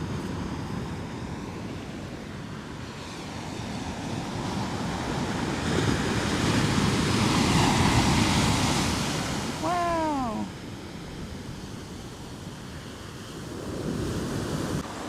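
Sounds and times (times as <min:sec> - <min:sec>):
waves breaking: 0:02.8 - 0:15.0
wind rumble on microphone: 0:10.5 - 0:15.0.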